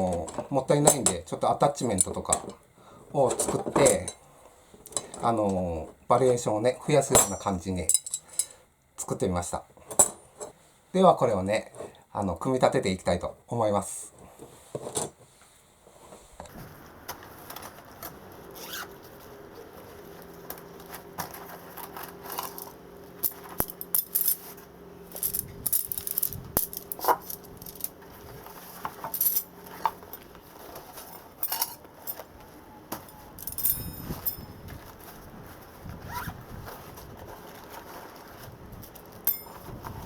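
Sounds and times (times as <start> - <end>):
metal bars clinking together: 7.1 - 8.5, 25.1 - 28.0, 28.9 - 30.2, 31.0 - 32.2, 33.0 - 34.6, 39.2 - 39.7.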